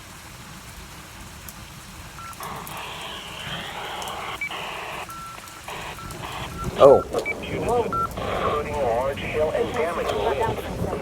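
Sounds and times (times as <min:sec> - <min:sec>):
brief steady beeps: 0:02.2 - 0:11.0
radio static hiss: 0:02.2 - 0:11.0.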